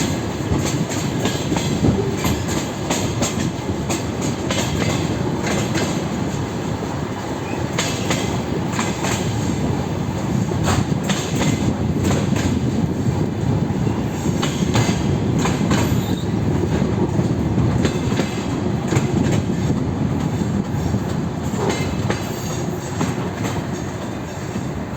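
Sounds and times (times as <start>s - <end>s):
wheels clacking over rail joints: 0.0s - 9.7s, 10.4s - 12.9s, 14.2s - 24.8s
railcar rolling rumble: 0.0s - 24.9s.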